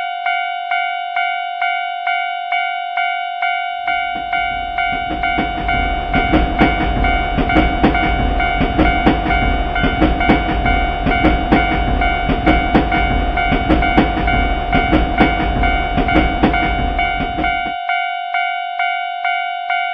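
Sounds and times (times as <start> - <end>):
railroad crossing bell ringing: 0.0 - 19.9
train rumbling past: 3.7 - 17.8
wheels clacking over rail joints: 3.8 - 17.8.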